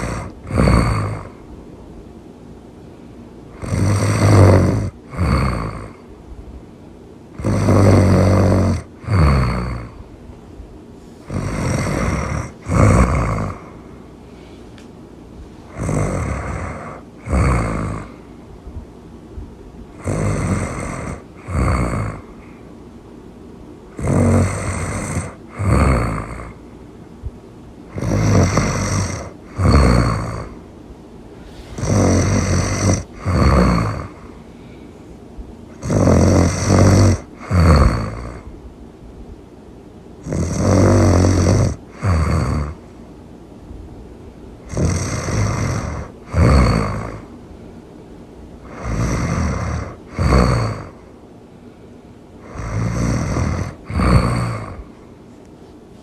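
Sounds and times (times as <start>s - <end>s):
loud snoring: 0.0s - 1.5s, 3.5s - 6.1s, 7.3s - 10.1s, 11.2s - 14.0s, 15.7s - 18.3s, 19.9s - 22.6s, 23.9s - 26.6s, 27.9s - 30.6s, 31.4s - 34.4s, 35.7s - 38.5s, 40.2s - 42.9s, 44.6s - 47.3s, 48.6s - 51.0s, 52.4s - 55.0s.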